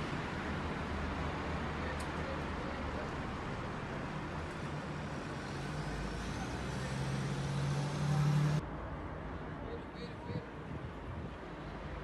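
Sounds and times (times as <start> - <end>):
road noise rushing: 0.0 - 8.6.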